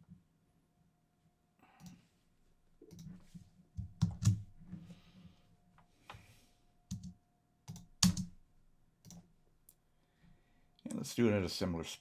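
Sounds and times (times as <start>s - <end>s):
keyboard and mouse clicks: 2.8s - 3.2s, 7.7s - 8.3s.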